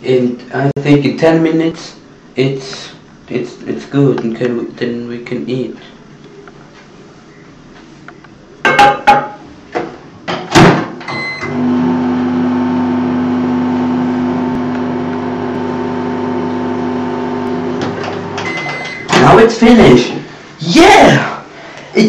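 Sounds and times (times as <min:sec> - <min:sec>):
microwave oven humming: 0:11.1 - 0:19.1.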